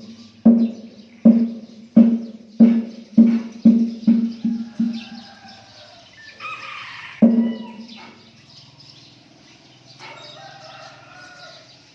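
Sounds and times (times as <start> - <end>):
rooster crowing: 4.2 - 8.0, 10.0 - 11.8.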